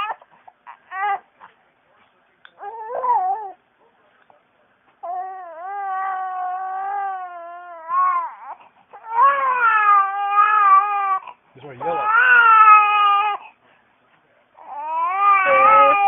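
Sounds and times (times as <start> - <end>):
baby crying: 0.0 - 1.3, 2.6 - 3.6, 5.0 - 13.5, 14.6 - 16.0.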